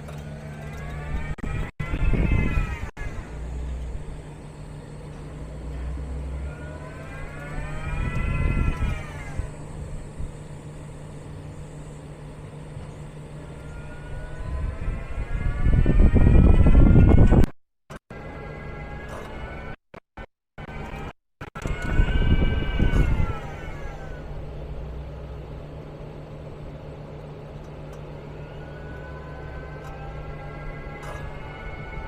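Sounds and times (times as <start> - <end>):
low rumble: 0.0 - 17.5
steady hum: 0.0 - 17.5
electric motor whine: 0.0 - 32.0.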